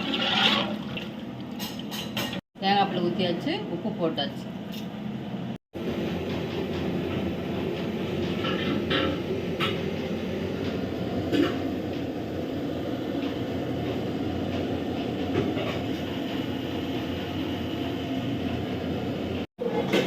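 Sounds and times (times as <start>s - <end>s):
gas burner rushing: 5.7s - 20.0s.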